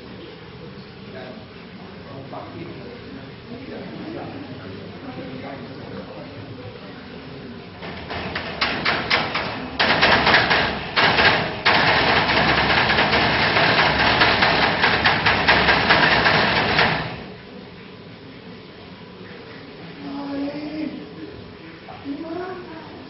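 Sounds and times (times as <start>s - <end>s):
rapid rattling clatter: 7.8s - 17.4s.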